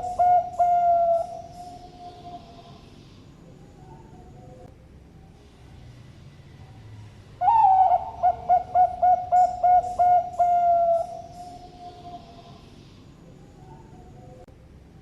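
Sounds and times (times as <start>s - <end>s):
dove cooing: 0.0s - 2.7s, 7.4s - 12.6s.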